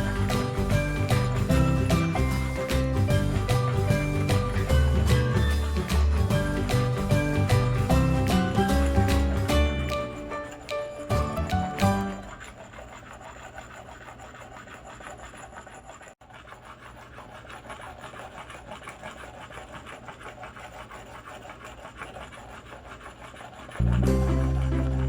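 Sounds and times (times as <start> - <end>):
music: 0.0 - 12.4, 23.8 - 25.0
whetstone scraping on steel: 0.0 - 25.0.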